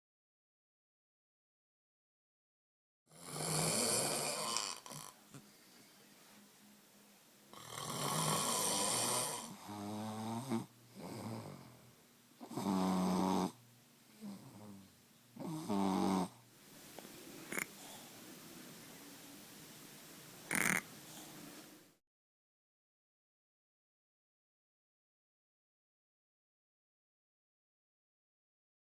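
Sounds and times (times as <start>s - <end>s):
person snoring: 3.1s - 5.5s, 7.5s - 13.6s, 14.2s - 16.4s, 17.2s - 18.2s, 20.4s - 21.5s.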